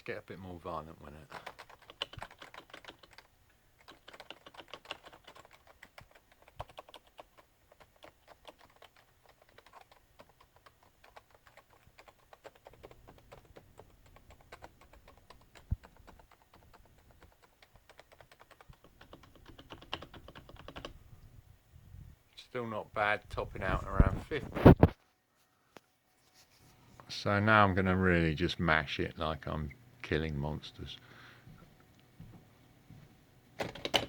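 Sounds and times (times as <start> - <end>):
fast keyboard typing: 1.2 - 21.0, 33.6 - 34.0.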